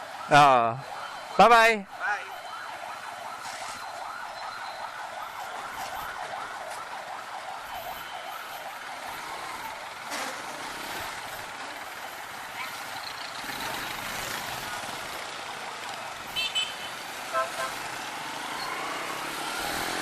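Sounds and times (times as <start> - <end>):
siren warbling: 0.0 - 9.7.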